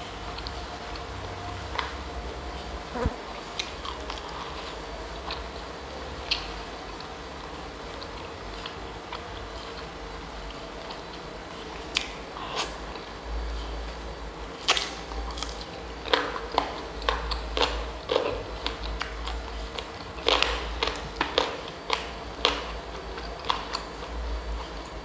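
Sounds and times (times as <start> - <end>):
person chewing with mouth clicks: 14.7 - 24.1.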